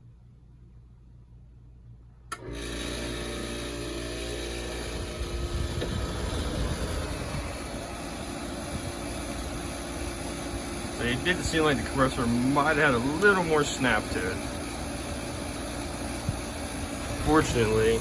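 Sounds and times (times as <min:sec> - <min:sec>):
air conditioner humming: 0:00.0 - 0:18.0
air conditioner switch click: 0:02.3 - 0:02.7.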